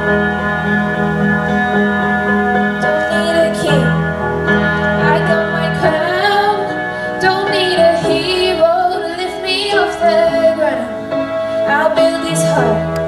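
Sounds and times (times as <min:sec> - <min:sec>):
instrumental backing music: 0:00.0 - 0:13.0
woman singing: 0:02.8 - 0:13.0.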